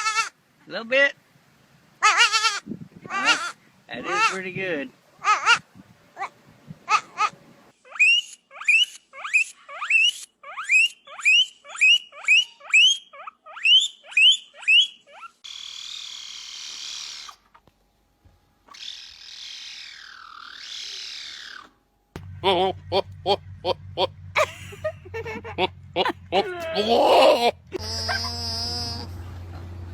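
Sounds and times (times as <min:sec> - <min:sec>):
animal squeaky rising calls: 0:02.0 - 0:04.4, 0:05.2 - 0:05.6, 0:06.9 - 0:17.5, 0:18.7 - 0:21.7, 0:26.0 - 0:29.4
high-pitched animal sound: 0:02.0 - 0:04.4, 0:06.9 - 0:17.5, 0:18.7 - 0:21.7, 0:26.0 - 0:29.3.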